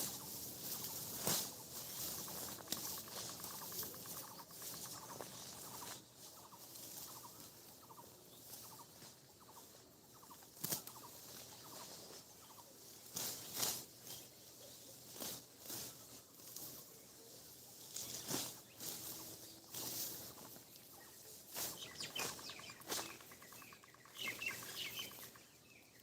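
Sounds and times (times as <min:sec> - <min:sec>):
bird rattling call: 0:00.0 - 0:08.0, 0:21.6 - 0:25.5
dry stalks rustling and crackling: 0:00.0 - 0:26.0.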